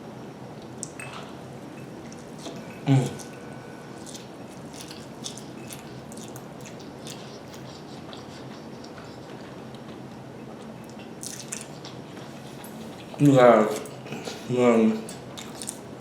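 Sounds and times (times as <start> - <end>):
person chewing noodles: 1.9 - 15.9.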